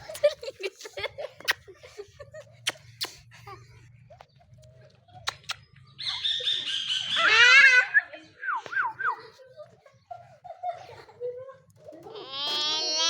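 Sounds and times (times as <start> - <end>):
baby squealing: 7.0 - 8.0, 12.1 - 13.0.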